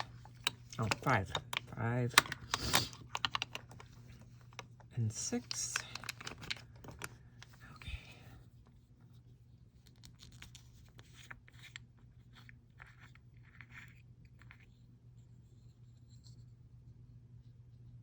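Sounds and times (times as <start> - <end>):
jars and packaging handled: 0.0 - 7.9
steady low hum: 0.0 - 18.0.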